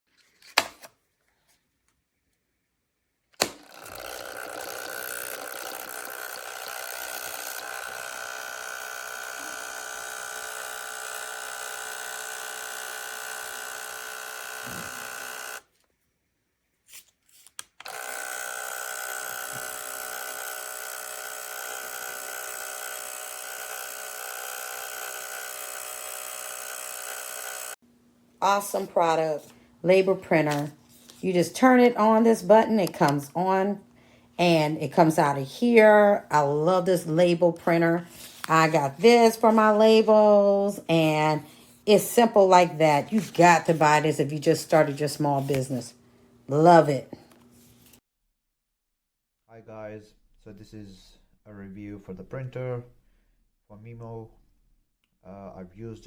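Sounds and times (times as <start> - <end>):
label printer motor whine: 3.7 - 15.6, 17.8 - 27.8.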